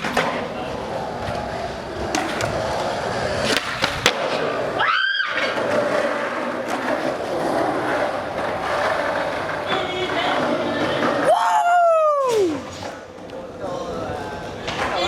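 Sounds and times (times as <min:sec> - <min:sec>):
skateboard clacks: 0:00.0 - 0:11.4, 0:14.4 - 0:15.0
skateboard wheels rolling on concrete: 0:00.0 - 0:15.0.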